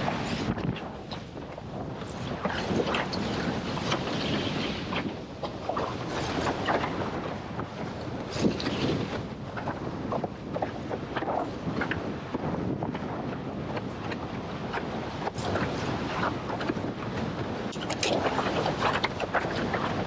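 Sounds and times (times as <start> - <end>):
board slapping water: 0.0 - 20.0
wind on microphone: 0.0 - 20.0.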